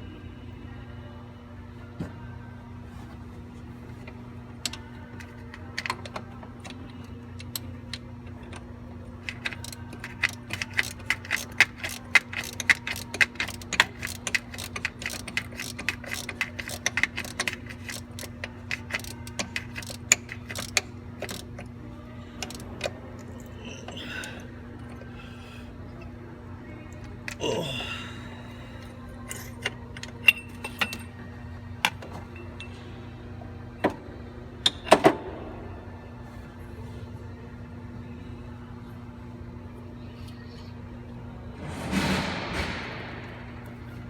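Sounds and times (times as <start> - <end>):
steady low hum: 0.0 - 44.0
ratchet wrench clicking: 9.2 - 21.5, 22.4 - 22.9.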